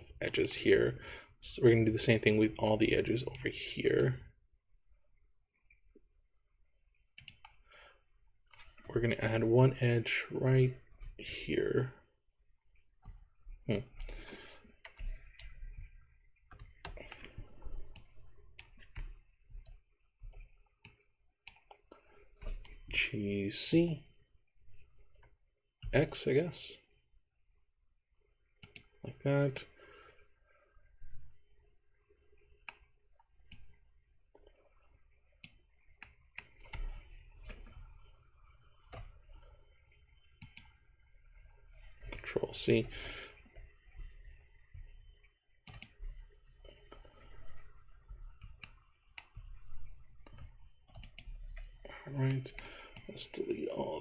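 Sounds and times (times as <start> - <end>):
mouse and keyboard clicking: 7.2 - 7.6, 14.8 - 15.9, 28.6 - 28.9, 40.4 - 40.8, 45.6 - 46.1, 50.3 - 51.6.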